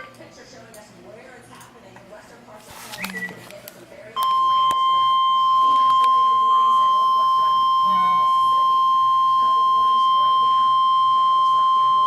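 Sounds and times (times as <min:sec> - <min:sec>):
loud steady alert tone: 0:04.2 - 0:12.0.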